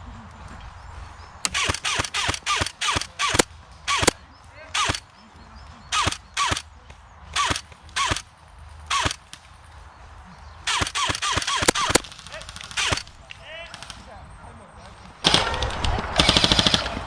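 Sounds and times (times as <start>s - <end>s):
airsoft gun shots: 1.5s - 4.2s, 4.8s - 5.0s, 5.9s - 6.6s, 7.4s - 8.2s, 8.9s - 9.4s, 10.7s - 14.0s, 15.2s - 17.0s.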